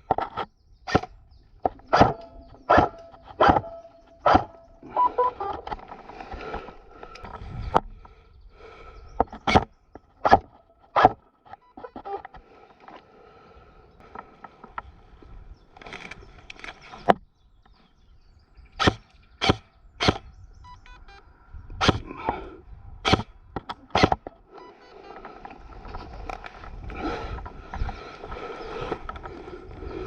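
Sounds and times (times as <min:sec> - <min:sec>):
airsoft gun shots: 0:01.9 - 0:04.6, 0:18.8 - 0:20.3, 0:21.8 - 0:22.1, 0:23.1 - 0:23.3, 0:24.0 - 0:24.2.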